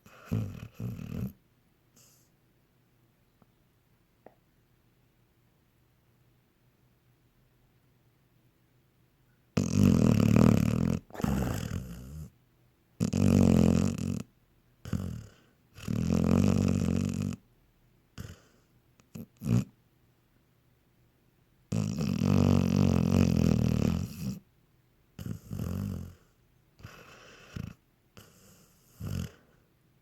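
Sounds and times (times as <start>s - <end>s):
dog snoring: 0.0s - 1.4s, 2.0s - 2.3s, 9.6s - 12.4s, 13.0s - 17.4s, 18.2s - 19.8s, 21.7s - 24.4s, 25.2s - 29.6s.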